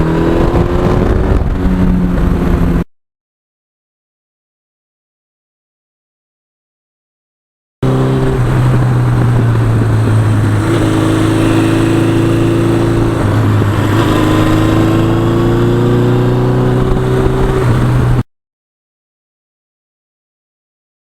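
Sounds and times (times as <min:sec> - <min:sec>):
motorcycle engine running: 0:00.0 - 0:02.8, 0:07.8 - 0:18.2.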